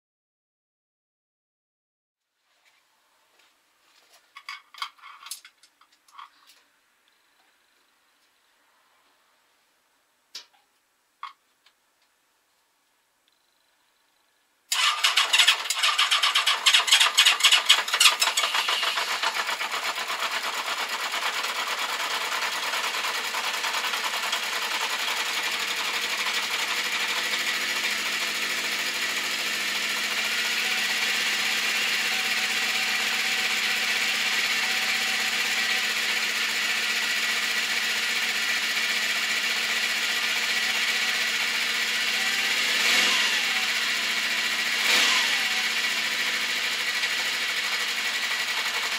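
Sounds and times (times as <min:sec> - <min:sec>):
motorcycle engine starting and idling: 0:14.7 - 0:48.9.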